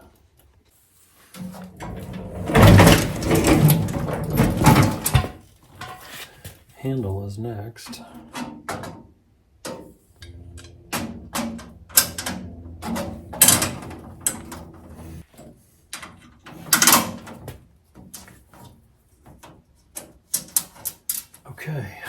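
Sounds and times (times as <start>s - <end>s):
metal clanks and knocks: 1.4s - 6.1s, 9.7s - 21.3s
steady low hum: 1.5s - 5.3s, 10.2s - 15.3s.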